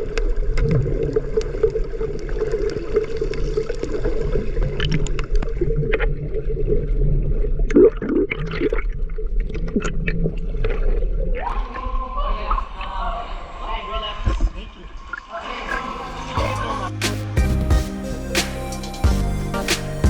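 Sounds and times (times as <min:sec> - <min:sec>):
small clicks and splashes: 0:00.0 - 0:06.9, 0:07.6 - 0:11.6
water sloshing and gurgling: 0:00.0 - 0:16.8.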